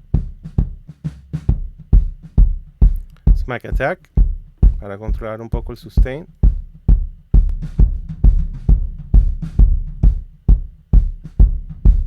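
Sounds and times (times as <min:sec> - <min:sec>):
kick drum hits: 0:00.0 - 0:12.0
snare drum: 0:00.0 - 0:12.0.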